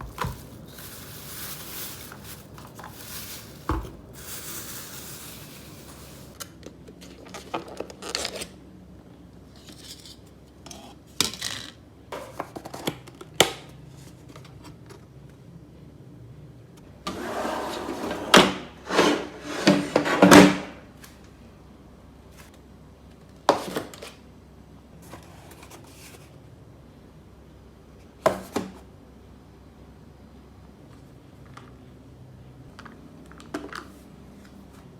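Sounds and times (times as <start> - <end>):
clatter and scraping: 0.0 - 6.4.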